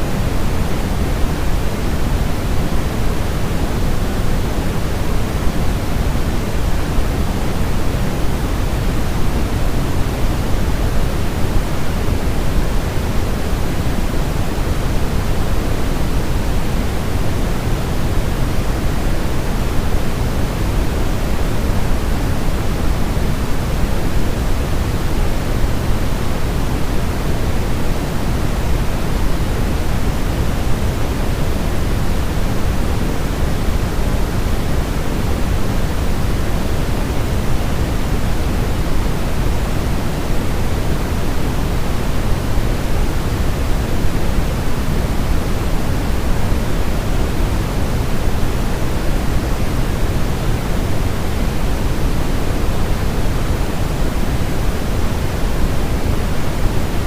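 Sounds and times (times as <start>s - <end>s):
white noise: 0.0s - 57.0s.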